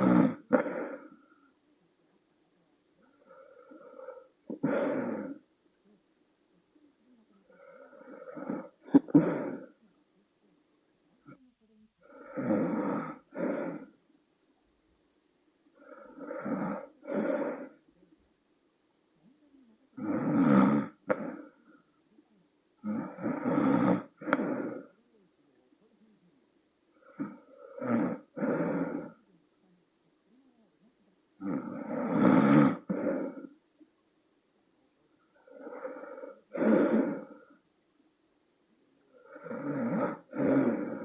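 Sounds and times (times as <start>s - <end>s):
woman snoring: 0.0s - 1.4s, 3.0s - 5.4s, 7.4s - 9.8s, 12.0s - 14.0s, 15.7s - 17.8s, 20.0s - 21.6s, 22.8s - 25.0s, 26.9s - 29.2s, 31.4s - 33.6s, 35.3s - 37.6s, 39.1s - 41.0s.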